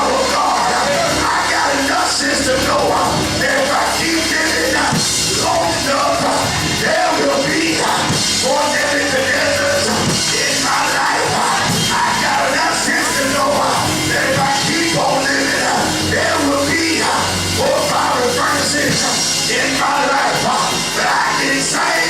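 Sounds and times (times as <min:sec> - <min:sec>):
loud live music with drums: 0:00.0 - 0:22.0
people yelling and singing: 0:00.0 - 0:22.0.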